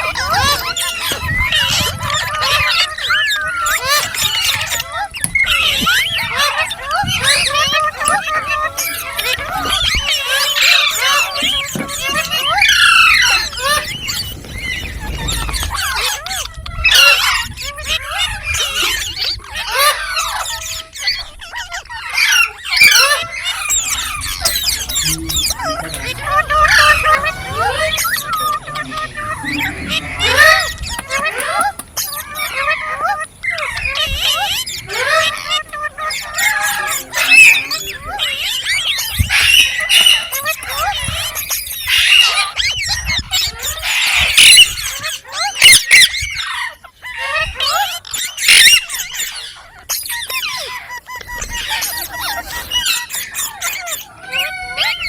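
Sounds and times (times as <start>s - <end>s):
parrot chirping and squawking: 0.0s - 55.0s
parrot chattering: 21.6s - 42.8s.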